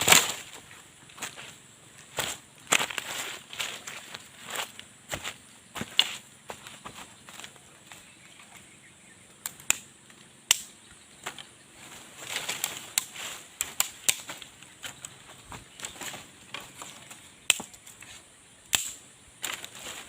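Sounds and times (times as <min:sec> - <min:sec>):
forest insects droning: 0:00.0 - 0:20.0
sharp snaps and knocks: 0:09.4 - 0:11.5, 0:12.4 - 0:15.1, 0:16.5 - 0:17.9, 0:18.7 - 0:19.8.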